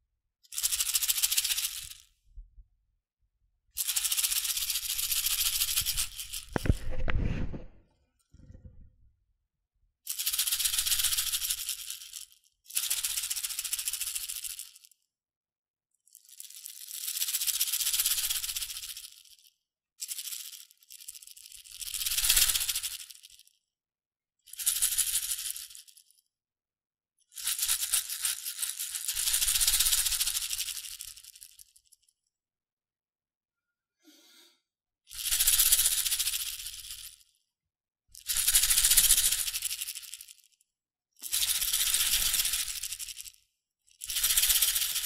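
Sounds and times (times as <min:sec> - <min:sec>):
shakers rattling grains: 0:00.5 - 0:02.1, 0:03.8 - 0:06.9, 0:10.1 - 0:14.9, 0:16.1 - 0:23.4, 0:24.5 - 0:26.1, 0:27.3 - 0:32.1, 0:35.1 - 0:37.3, 0:38.2 - 0:40.6, 0:41.2 - 0:45.0.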